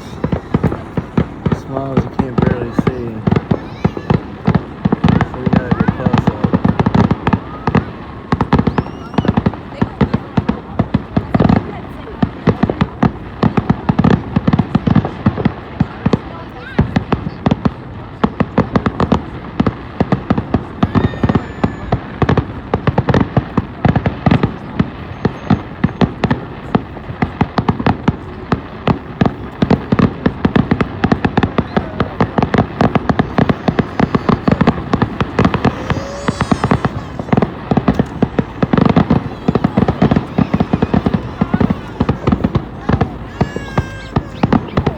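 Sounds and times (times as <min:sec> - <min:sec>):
firework whistle: 0:00.0 - 0:11.6, 0:20.1 - 0:26.8, 0:28.9 - 0:44.9
fireworks bangs and crackles: 0:00.0 - 0:44.9.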